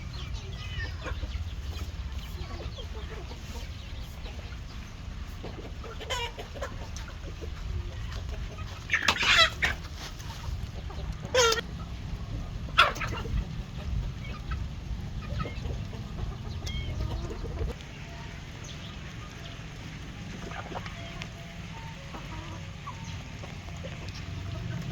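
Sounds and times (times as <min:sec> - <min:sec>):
hens clucking: 0:00.0 - 0:24.9
sharp hen calls: 0:11.2 - 0:11.6.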